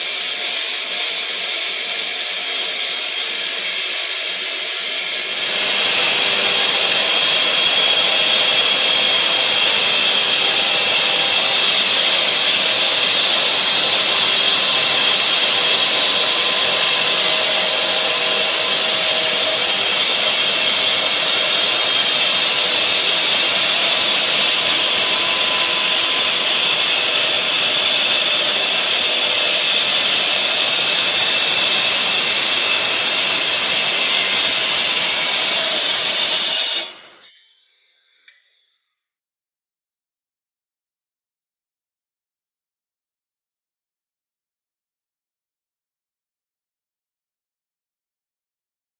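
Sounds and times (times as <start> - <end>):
electric saw cutting concrete: 0.0 - 37.2.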